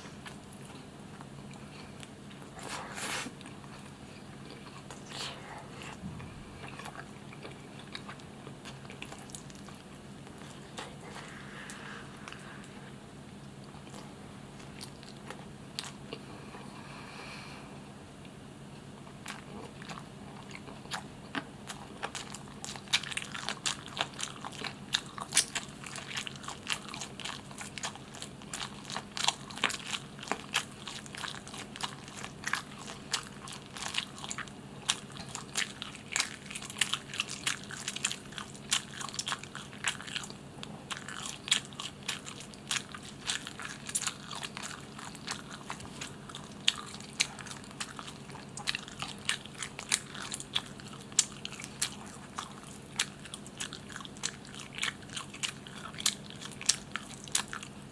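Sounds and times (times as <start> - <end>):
steady low hum: 0.0 - 57.9
crunchy bites and wet chewing: 19.0 - 57.9.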